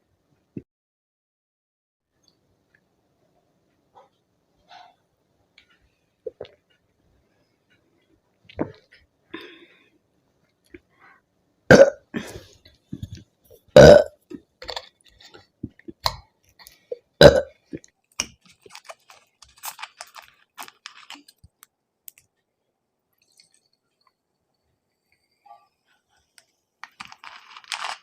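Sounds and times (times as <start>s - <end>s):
woman burping loudly: 11.7s - 12.5s, 13.8s - 14.2s, 17.2s - 17.6s.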